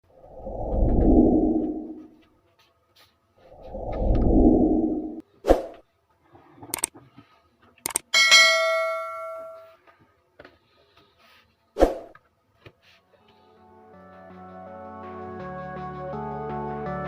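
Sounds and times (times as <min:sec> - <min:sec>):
metallic ding: 0:08.0 - 0:09.8.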